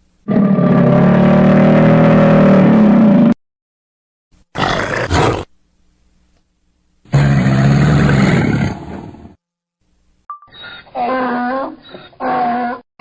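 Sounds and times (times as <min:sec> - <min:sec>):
large animal roaring: 0:00.3 - 0:03.4, 0:04.6 - 0:05.5, 0:07.1 - 0:09.4.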